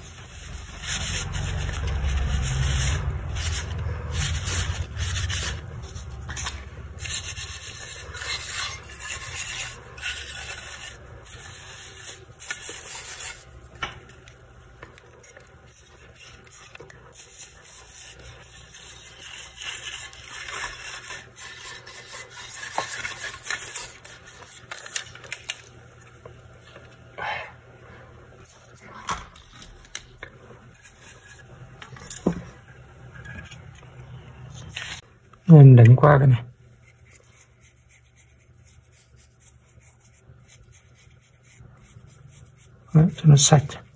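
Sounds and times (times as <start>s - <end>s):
scrubbing strokes: 0.0s - 13.7s, 15.2s - 25.0s, 36.8s - 43.9s.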